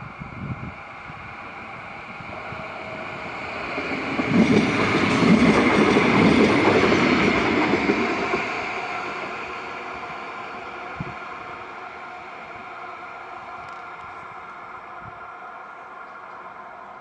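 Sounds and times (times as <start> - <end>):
tram wheels rumbling on rails: 0.0 - 17.0.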